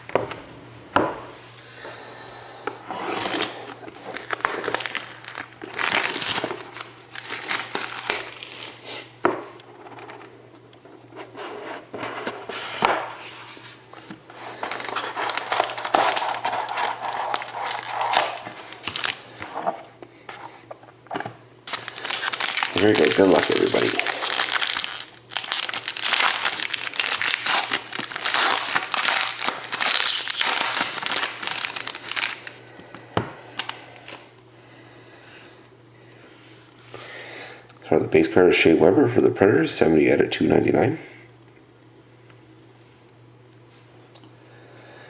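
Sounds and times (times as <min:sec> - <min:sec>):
plastic wrapping crinkling and tearing: 0:03.0 - 0:09.1, 0:14.4 - 0:19.6, 0:21.6 - 0:32.6.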